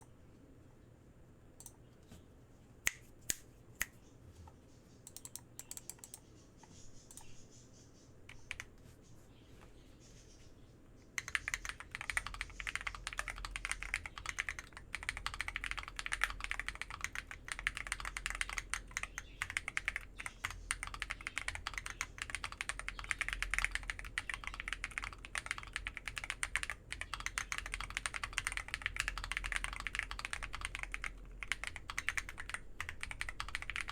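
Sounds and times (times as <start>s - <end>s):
mechanical keyboard typing: 11.2s - 33.9s.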